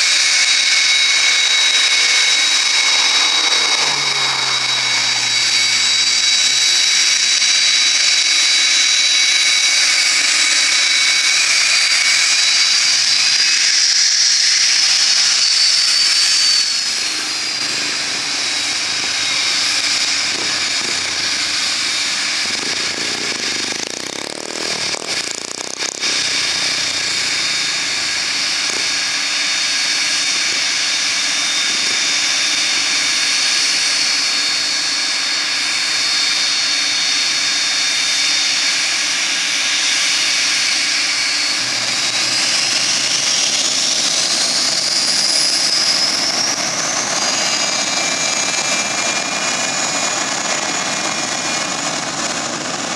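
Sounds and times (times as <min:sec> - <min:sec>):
jet engine rushing hiss: 0:00.0 - 0:52.9
jet engine whine: 0:00.0 - 0:52.9.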